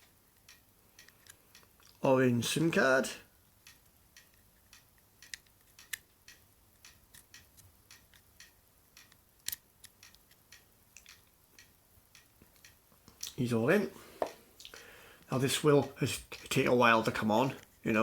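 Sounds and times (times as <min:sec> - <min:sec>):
small plastic and metal clicks: 0:03.7 - 0:13.4.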